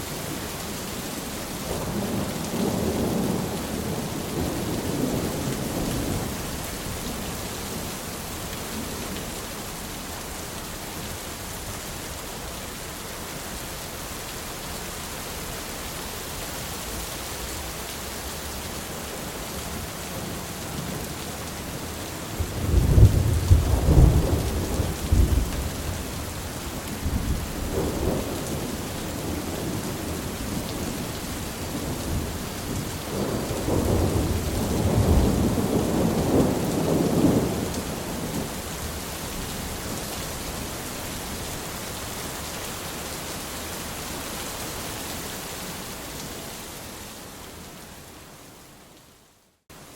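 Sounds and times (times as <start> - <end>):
steady rain hiss: 0.0 - 49.9
rolling thunder: 22.4 - 31.1, 31.7 - 38.5.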